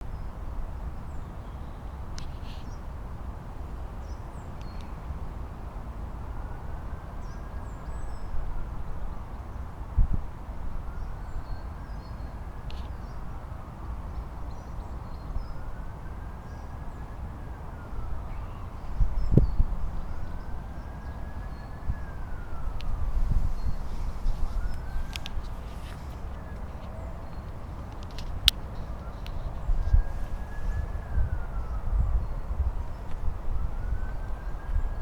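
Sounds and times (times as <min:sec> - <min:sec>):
distant siren wailing: 0:13.4 - 0:35.0
small birds chirping: 0:22.7 - 0:31.0.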